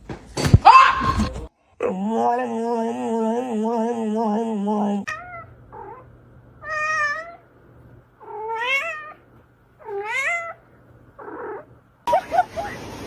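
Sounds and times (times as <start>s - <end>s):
cat meowing: 5.1s - 6.0s, 6.6s - 7.4s, 8.2s - 9.2s, 9.8s - 10.6s.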